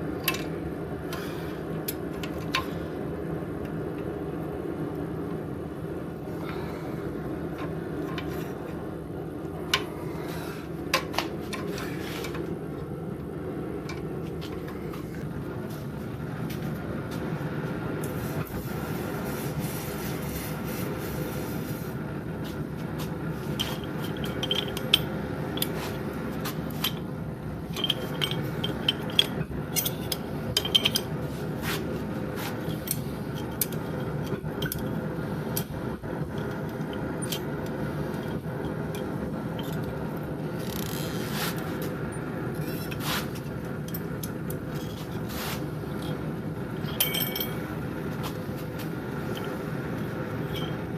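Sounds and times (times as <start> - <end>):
steady machine hum: 0.0 - 50.9
scraping on metal: 9.8 - 12.5, 40.8 - 41.8, 44.7 - 45.8.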